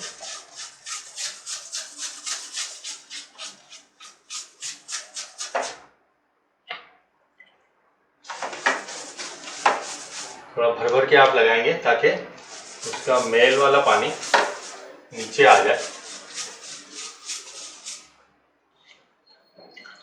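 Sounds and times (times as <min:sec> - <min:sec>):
wet brush scrubbing: 0:00.0 - 0:05.9, 0:08.3 - 0:10.5, 0:12.3 - 0:18.2.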